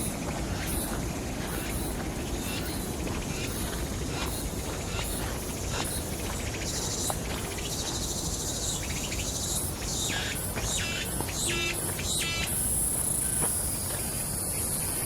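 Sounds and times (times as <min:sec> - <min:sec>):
steady low rumble: 0:00.0 - 0:08.9
birds chirping: 0:00.0 - 0:13.6
insects chirping: 0:00.0 - 0:15.0.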